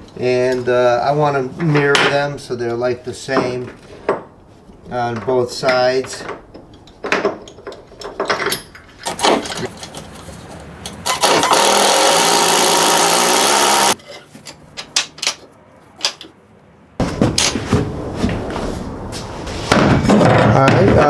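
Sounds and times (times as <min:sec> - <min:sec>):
clicks and knocks of tools: 0:05.2 - 0:11.7, 0:14.0 - 0:16.4
cordless drill running: 0:11.1 - 0:14.0.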